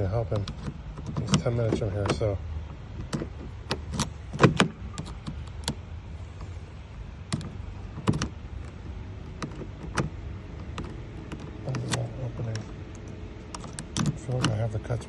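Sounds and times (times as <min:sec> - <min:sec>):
low steady hum: 0:00.0 - 0:15.0
key clicking in door lock: 0:07.3 - 0:08.4, 0:13.0 - 0:14.6.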